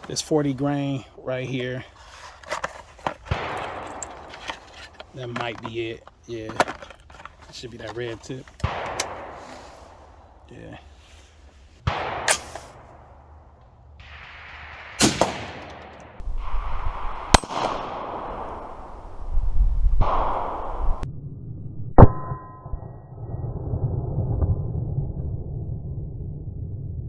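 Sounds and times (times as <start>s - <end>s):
rifle shots: 3.3s - 5.2s, 8.6s - 10.5s, 11.8s - 16.2s, 17.3s - 18.3s.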